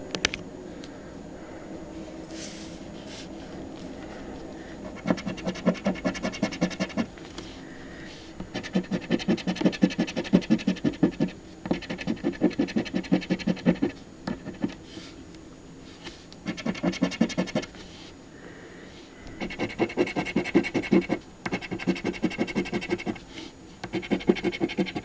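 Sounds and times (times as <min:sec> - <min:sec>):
scratching lottery ticket: 0:04.8 - 0:07.3, 0:08.5 - 0:14.6, 0:15.9 - 0:17.9, 0:19.4 - 0:25.0.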